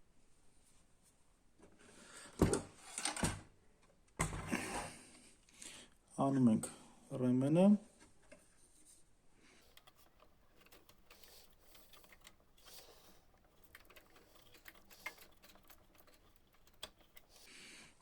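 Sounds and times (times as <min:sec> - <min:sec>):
small plastic clicks and rattles: 0:09.6 - 0:17.5.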